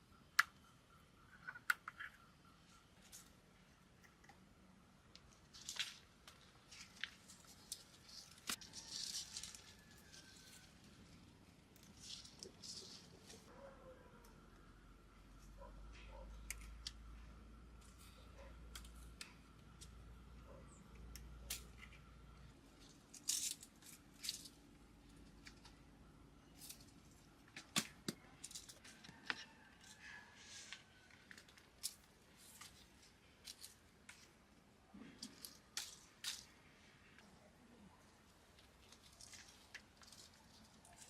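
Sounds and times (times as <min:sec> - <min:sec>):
faint low hum: 0:00.0 - 0:41.0
rustling of tomatoes handled: 0:05.3 - 0:13.6, 0:38.0 - 0:41.0.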